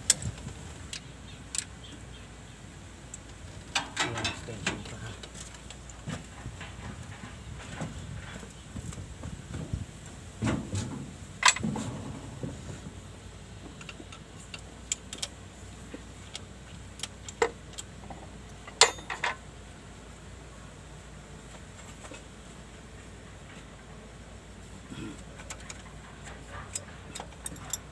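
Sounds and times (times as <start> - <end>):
metal tools clicking and knocking: 3.7 - 4.9, 18.6 - 19.4, 25.3 - 27.9.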